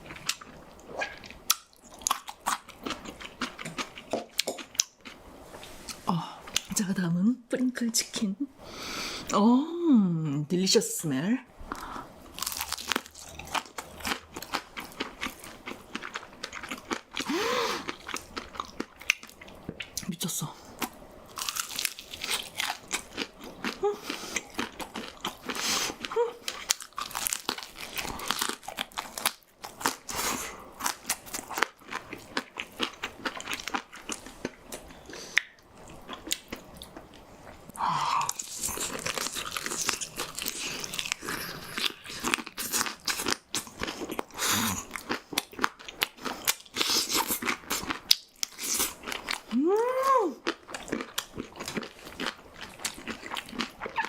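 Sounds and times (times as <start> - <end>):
crunchy chewing: 11.8 - 20.0, 20.8 - 37.2, 38.2 - 49.6, 50.4 - 54.0.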